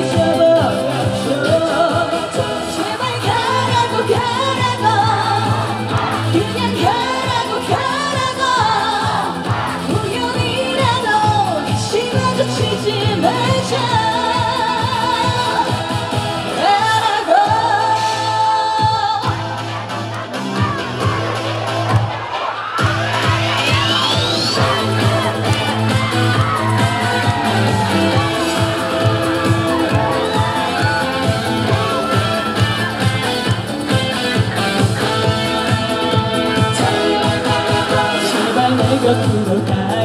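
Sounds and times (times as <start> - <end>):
person singing with vibrato: 0.0 - 19.9, 23.6 - 40.0
bass line: 0.0 - 40.0
drum beat: 3.2 - 11.9, 18.9 - 40.0.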